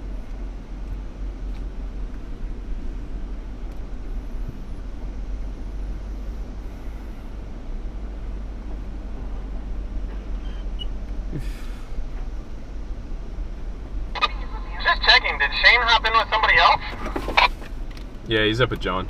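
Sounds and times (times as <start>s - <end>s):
vehicle engine rumbling: 0.0s - 19.0s.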